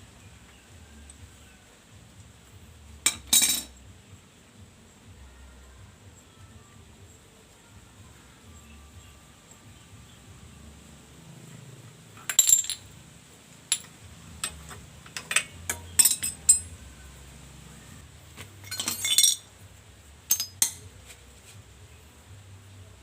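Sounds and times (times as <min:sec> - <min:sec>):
small hard parts clinking: 0:03.0 - 0:03.8, 0:12.2 - 0:13.0, 0:13.7 - 0:16.8, 0:18.5 - 0:19.5, 0:20.2 - 0:21.0.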